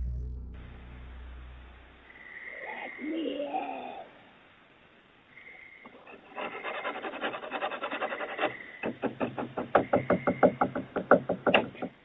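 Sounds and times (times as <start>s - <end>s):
faint high whine: 0.0s - 6.1s
scratching on door: 5.9s - 12.0s
rapid knocking on door: 8.8s - 12.0s.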